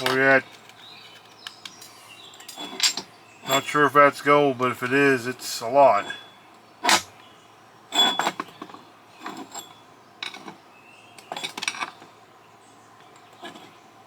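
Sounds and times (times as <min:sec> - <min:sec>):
small metal parts clinking: 0:00.0 - 0:03.8, 0:07.9 - 0:10.6, 0:11.2 - 0:12.0.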